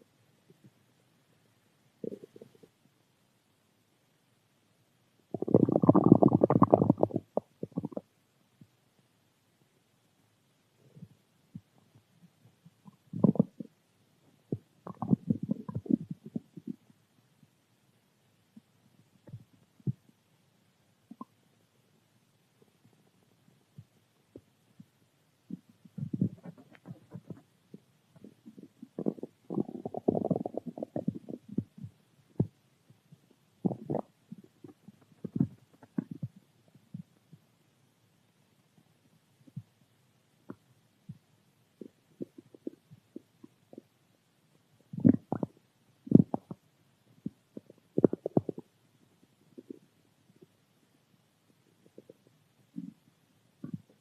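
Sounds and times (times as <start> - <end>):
stomach growling and gurgling: 2.0 - 2.8, 5.3 - 8.2, 10.8 - 17.0, 18.6 - 20.2, 21.0 - 21.4, 22.7 - 37.2, 40.4 - 44.0, 44.6 - 50.6, 51.5 - 54.0.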